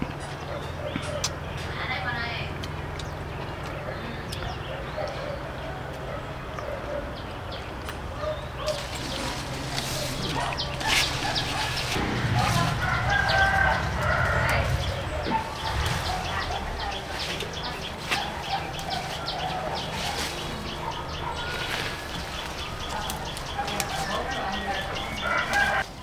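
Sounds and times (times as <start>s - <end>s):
chickens clucking: 8.2s - 25.9s
rooster crowing: 10.0s - 25.8s.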